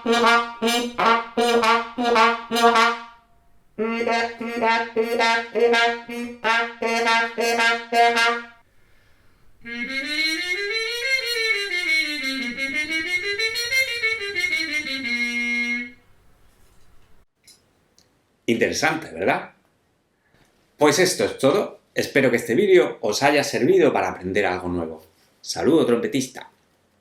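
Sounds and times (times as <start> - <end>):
buzzy brass tone gliding: 0.0 - 8.6, 9.6 - 16.2
muted trumpet playing: 0.0 - 8.6, 9.6 - 16.0.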